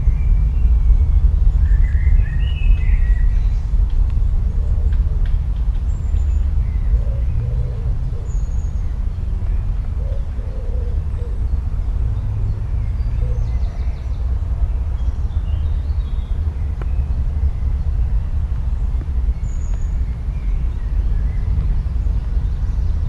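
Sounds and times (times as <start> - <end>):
steady low rumble: 0.0 - 23.0.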